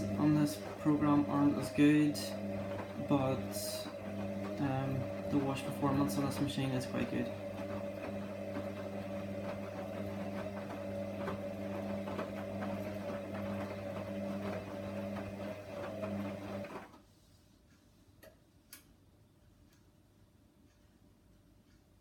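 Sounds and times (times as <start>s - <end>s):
washing machine motor humming: 0.0s - 16.9s.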